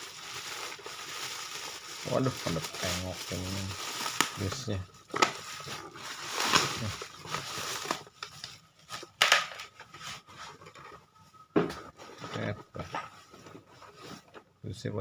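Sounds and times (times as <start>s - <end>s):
cardboard box rustling and tearing: 5.4s - 8.4s.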